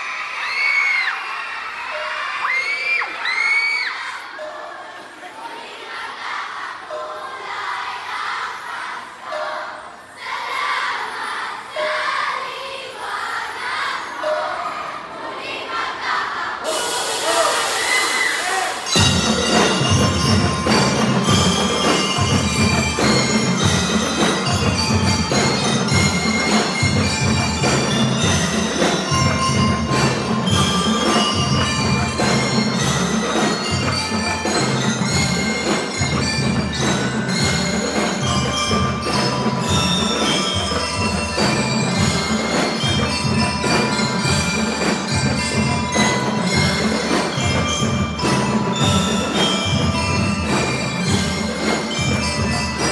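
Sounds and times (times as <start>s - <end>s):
bell lyres playing melody: 16.7s - 52.9s
marching drums: 16.7s - 52.9s.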